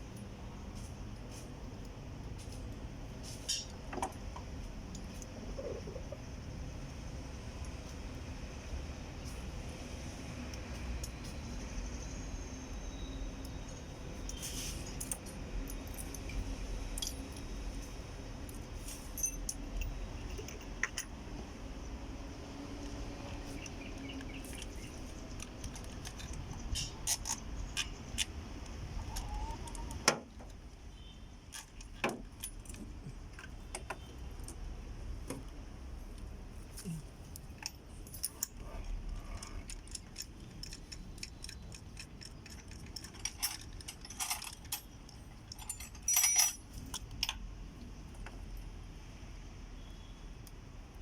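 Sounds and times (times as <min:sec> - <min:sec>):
metal tools clinking and rattling: 0:14.2 - 0:17.8, 0:18.5 - 0:21.1, 0:23.5 - 0:28.3, 0:37.4 - 0:47.4.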